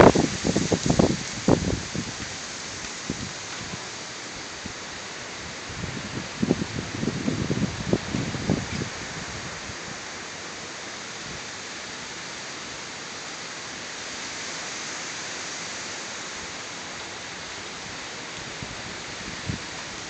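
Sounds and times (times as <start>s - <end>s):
wind buffeting microphone: 0.0s - 3.9s, 5.4s - 9.9s, 18.5s - 19.8s
wind blowing through trees: 0.0s - 20.0s.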